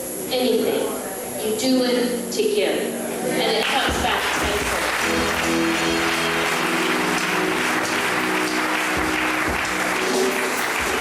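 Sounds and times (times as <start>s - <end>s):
audience applauding: 3.6s - 11.0s
instrumental music with held notes: 4.6s - 11.0s.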